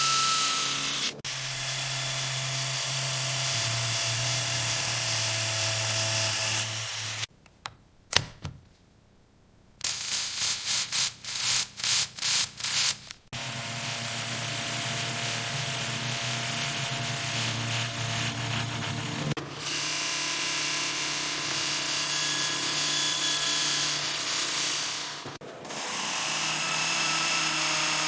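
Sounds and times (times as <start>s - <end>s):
small electric motor running: 0.0s - 7.3s, 13.4s - 24.9s.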